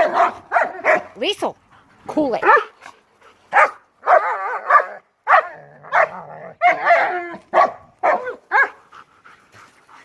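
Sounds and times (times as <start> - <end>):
dog barking: 0.0 - 1.1, 2.4 - 2.7, 3.5 - 8.8
dog bark-whine: 3.6 - 8.8.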